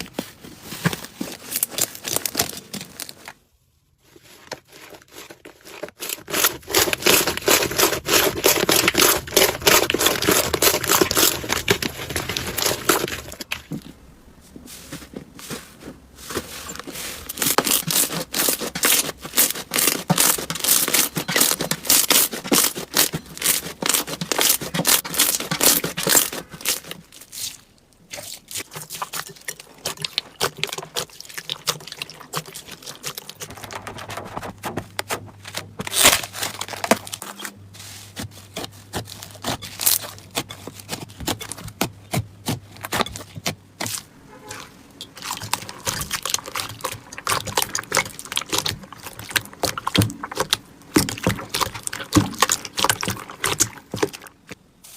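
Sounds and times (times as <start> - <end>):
slime crackling and popping: 17.3 - 34.4, 45.1 - 54.6.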